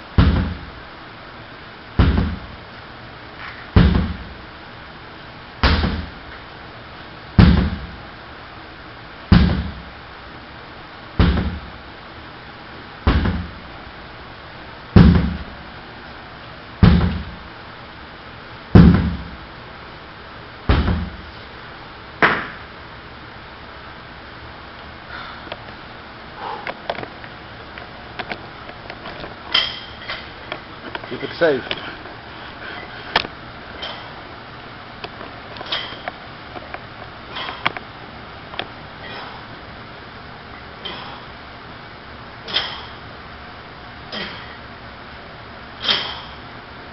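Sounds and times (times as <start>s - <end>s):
sledgehammer heavy thuds: 0.2s - 0.7s, 2.0s - 2.5s, 3.8s - 4.3s, 5.6s - 6.2s, 7.4s - 8.0s, 9.3s - 9.9s, 11.2s - 11.7s, 13.1s - 13.6s, 15.0s - 15.5s, 16.8s - 17.4s, 18.8s - 19.4s, 20.7s - 21.3s.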